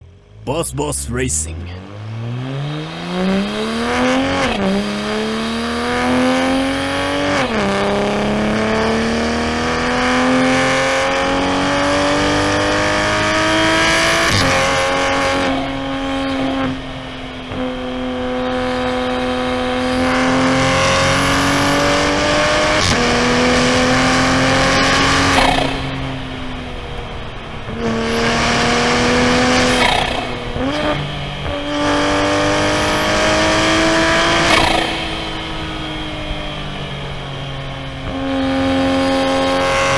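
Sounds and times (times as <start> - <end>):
car engine accelerating: 16.1 - 39.9.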